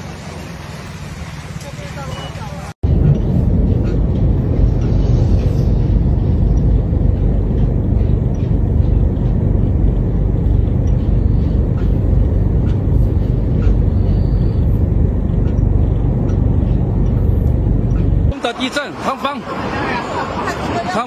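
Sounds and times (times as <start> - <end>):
loud low rumble: 2.8 - 18.4.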